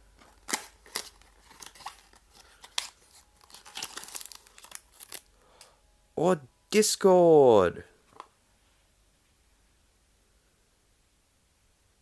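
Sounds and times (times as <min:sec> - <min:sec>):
packaging crinkling and tearing: 0:00.2 - 0:05.4.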